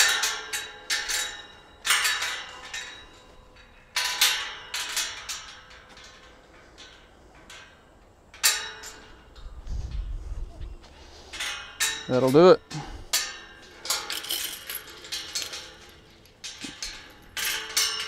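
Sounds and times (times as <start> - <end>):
sharp metallic clanks: 0.0 - 10.1, 11.0 - 18.0.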